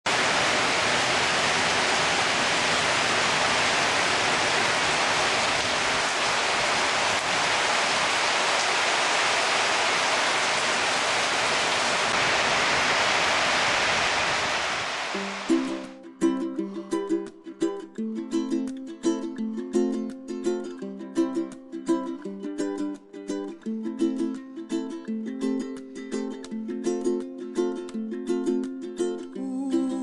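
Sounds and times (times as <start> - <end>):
heavy rain hiss: 0.1 - 15.9.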